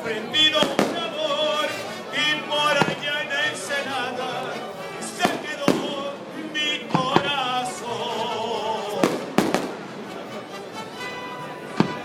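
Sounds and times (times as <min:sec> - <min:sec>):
music playing: 0:00.0 - 0:12.0
fireworks bangs: 0:00.4 - 0:01.7, 0:02.7 - 0:03.1, 0:05.1 - 0:06.2, 0:06.9 - 0:07.5, 0:09.0 - 0:10.0, 0:11.8 - 0:12.0.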